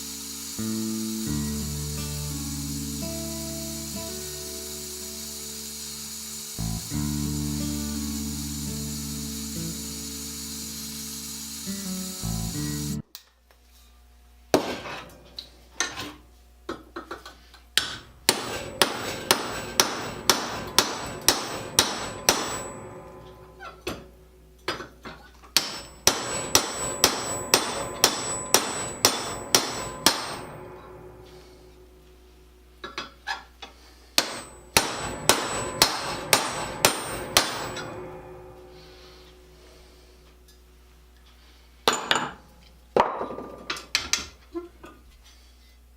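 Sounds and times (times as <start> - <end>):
hammer striking steel rivet: 17.8 - 31.6, 34.2 - 39.3, 41.9 - 42.4.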